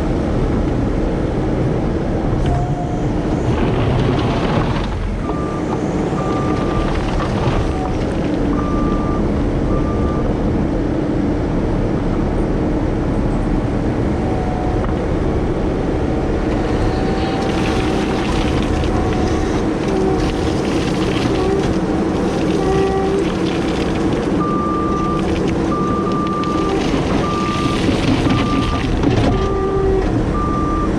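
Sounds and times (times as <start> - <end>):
diesel engine running: 0.0 - 30.9
backup alarm beeping: 5.2 - 7.9, 24.4 - 30.9.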